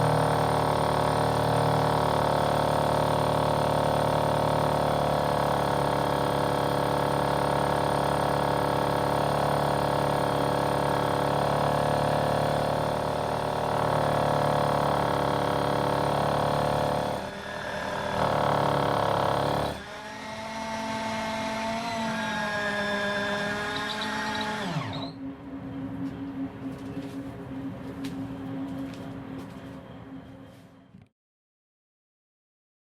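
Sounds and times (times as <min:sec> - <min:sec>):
electric drill boring into concrete: 0:00.0 - 0:25.2.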